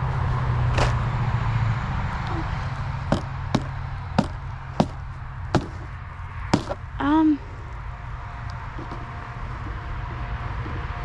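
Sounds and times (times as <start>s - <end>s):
cart humming: 2.2s - 11.0s.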